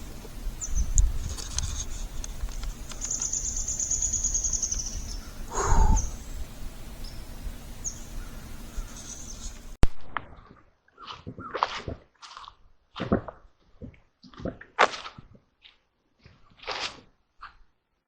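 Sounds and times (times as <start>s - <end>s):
bird high rapid trill: 0.0s - 9.8s
lower falling bird call: 0.0s - 9.8s
low rumble: 4.8s - 9.8s.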